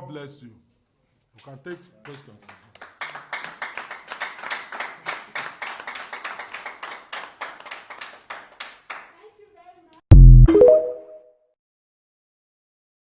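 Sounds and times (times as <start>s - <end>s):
people clapping: 1.7s - 9.2s.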